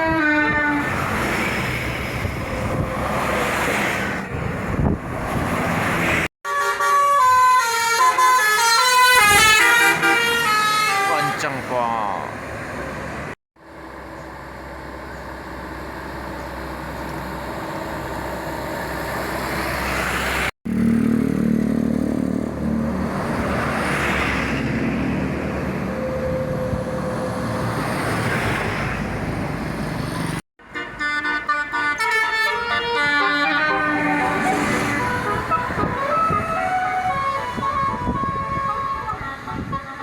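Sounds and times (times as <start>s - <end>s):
traffic noise: 0.0s - 40.0s
multi-tone musical air horns: 6.4s - 11.5s, 30.6s - 40.0s.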